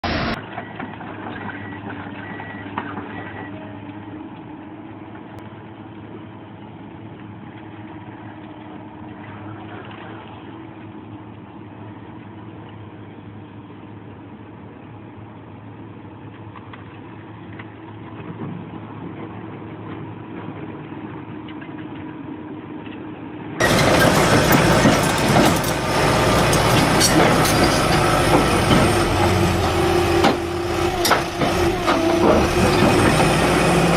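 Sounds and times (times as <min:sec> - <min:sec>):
excavator diesel engine running: 0:00.0 - 0:33.9
machine knocks: 0:23.6 - 0:33.3.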